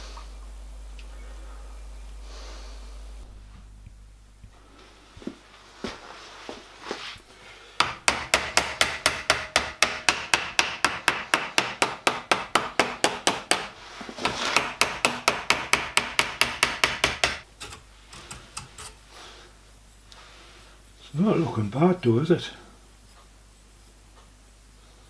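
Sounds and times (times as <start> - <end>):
hammer striking copper sheet: 7.8 - 19.0.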